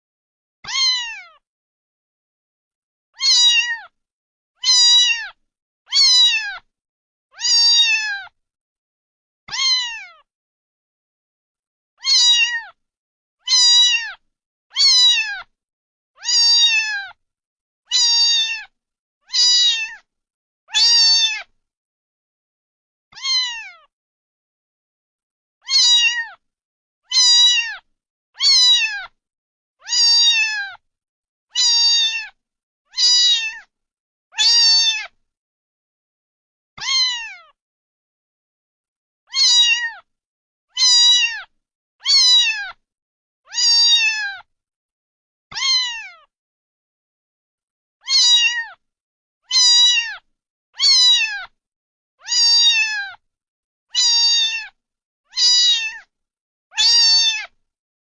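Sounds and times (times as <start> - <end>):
cat meowing: 0.6 - 1.4, 3.2 - 4.0, 4.6 - 6.7, 7.3 - 8.4, 9.5 - 10.3, 12.0 - 12.8, 13.4 - 15.5, 16.2 - 17.2, 17.9 - 18.7, 19.3 - 20.1, 20.7 - 21.5, 23.1 - 23.9, 25.6 - 26.4, 27.1 - 29.2, 29.8 - 30.8, 31.5 - 33.7, 34.3 - 35.2, 36.8 - 37.6, 39.3 - 40.1, 40.7 - 42.8, 43.5 - 44.5, 45.5 - 46.3, 48.0 - 48.8, 49.4 - 51.6, 52.2 - 53.2, 53.9 - 56.1, 56.7 - 57.6.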